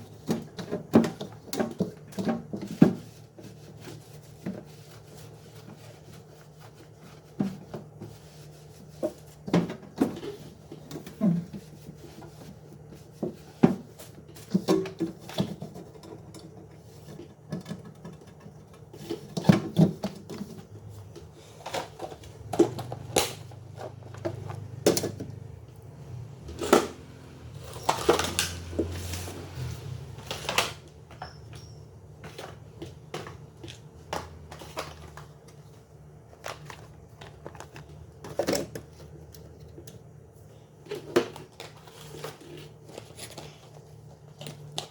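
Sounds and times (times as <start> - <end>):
objects knocking and clattering: 8.9 - 40.2.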